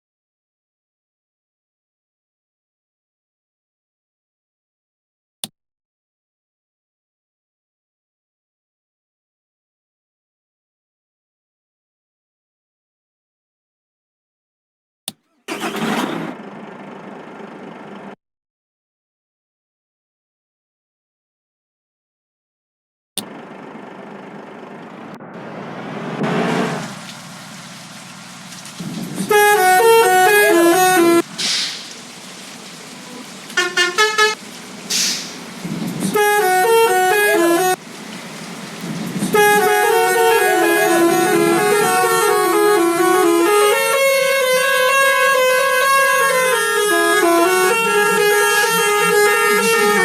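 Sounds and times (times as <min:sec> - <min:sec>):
road traffic noise: 0:15.5 - 0:18.2, 0:23.2 - 0:50.0
musical air horn tune: 0:29.2 - 0:31.4, 0:33.0 - 0:35.3, 0:36.1 - 0:37.8, 0:39.3 - 0:50.0
short hiss: 0:31.2 - 0:36.2.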